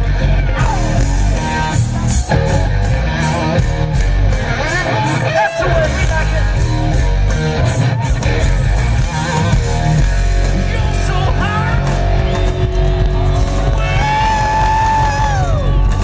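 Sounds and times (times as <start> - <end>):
electric guitar bending notes: 0.0 - 16.0
live rock band playing: 0.0 - 16.0.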